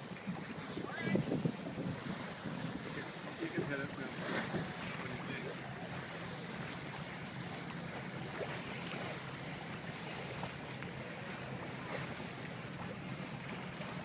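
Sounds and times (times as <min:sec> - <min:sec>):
wind buffeting microphone: 0:00.0 - 0:10.5
water noise: 0:00.0 - 0:14.0.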